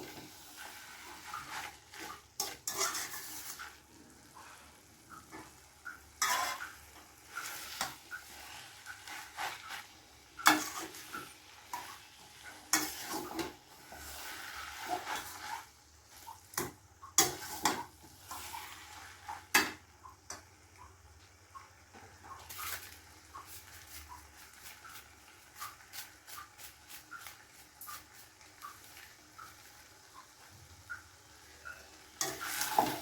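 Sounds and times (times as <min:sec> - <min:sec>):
spatula scraping a pan: 0:00.0 - 0:20.4, 0:31.5 - 0:33.0
food sizzling: 0:00.0 - 0:33.0.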